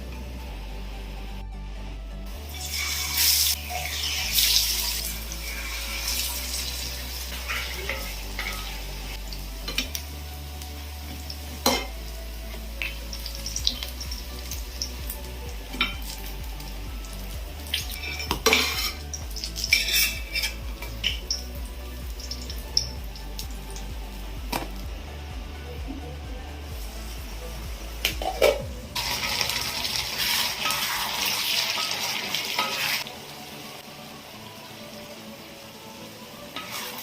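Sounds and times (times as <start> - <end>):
food sizzling: 2.3 - 37.0
metal spoon scraping a pot: 17.8 - 20.7.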